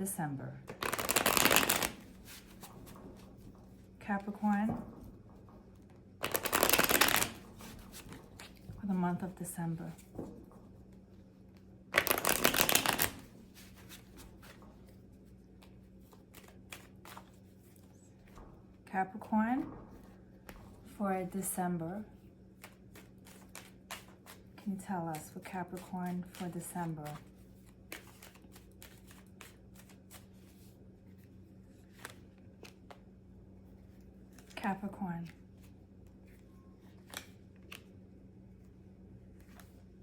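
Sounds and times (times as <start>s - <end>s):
cards being shuffled: 0.7s - 2.8s, 6.2s - 8.9s, 11.9s - 18.0s, 22.6s - 30.7s, 31.7s - 33.0s, 35.2s - 37.9s.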